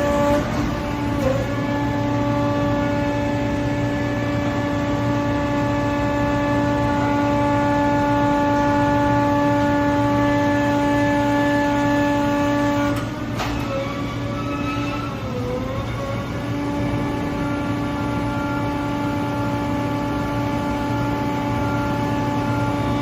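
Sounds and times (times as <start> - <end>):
baler mechanical whine: 0.0 - 23.0.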